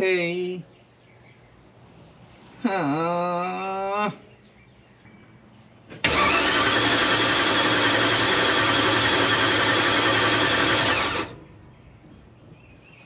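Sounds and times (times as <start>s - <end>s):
starter motor cranking engine: 6.0s - 11.4s.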